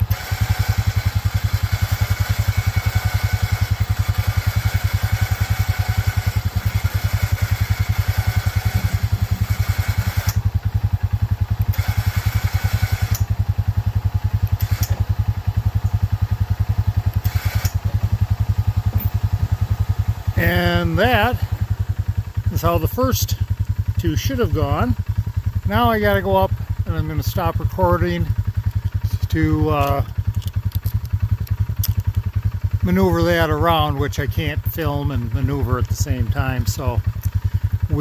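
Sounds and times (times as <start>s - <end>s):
small engine idling: 0.0s - 38.0s.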